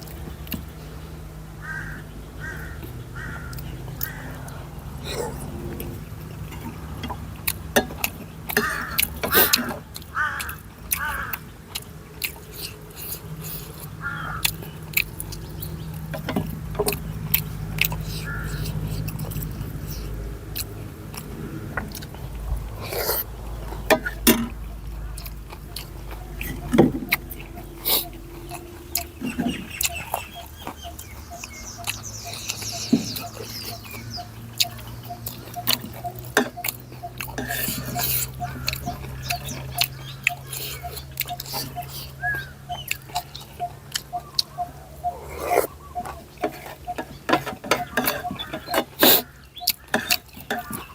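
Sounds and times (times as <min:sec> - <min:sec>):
low steady hum: 0:00.0 - 0:49.8
person chewing noodle soup: 0:02.8 - 0:50.9
mouth clicks: 0:24.0 - 0:50.9.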